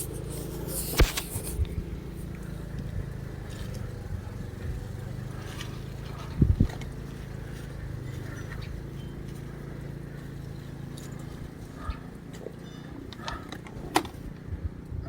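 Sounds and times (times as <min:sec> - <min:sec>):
sharp clicks and scrapes: 0:00.0 - 0:02.9
steady low hum: 0:00.0 - 0:15.0.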